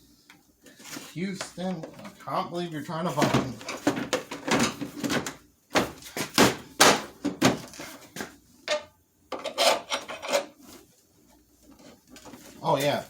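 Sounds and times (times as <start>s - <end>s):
hand tool scraping on housing: 9.4s - 10.6s.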